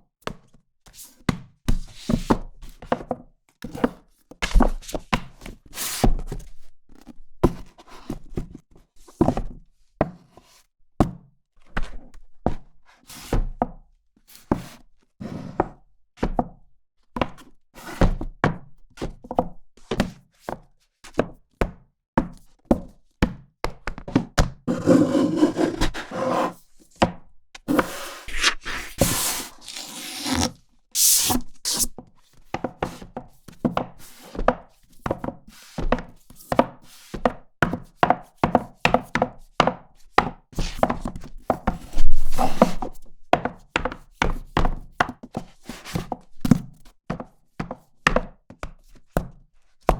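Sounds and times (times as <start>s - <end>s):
pages rustling: 27.7s - 31.9s.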